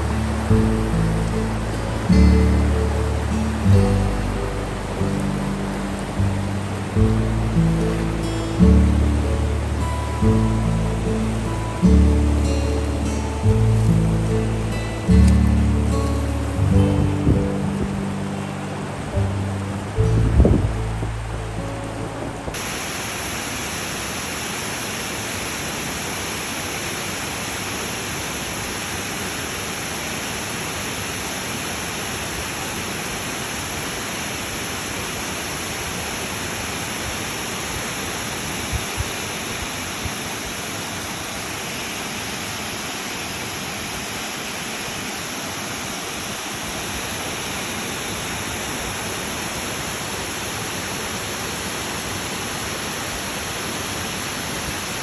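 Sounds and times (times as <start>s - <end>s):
low bumps: 0.0s - 22.6s
water rushing in a stream: 0.0s - 55.0s.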